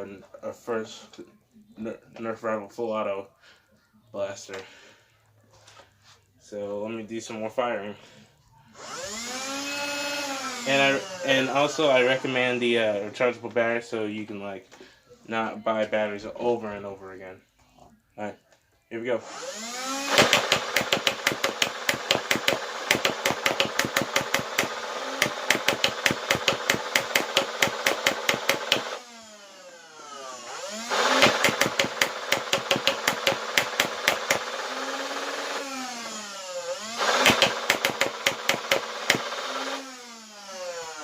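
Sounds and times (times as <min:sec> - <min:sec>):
motor whirring: 0:08.8 - 0:12.8, 0:19.2 - 0:41.0
toy blaster firing rapid snaps: 0:19.5 - 0:29.1, 0:30.8 - 0:39.8.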